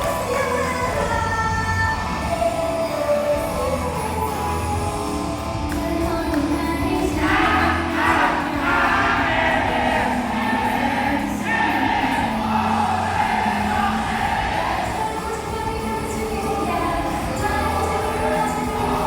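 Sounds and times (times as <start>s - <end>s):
pop instrumental with bass: 0.0s - 19.0s
group of voices singing: 6.4s - 19.0s.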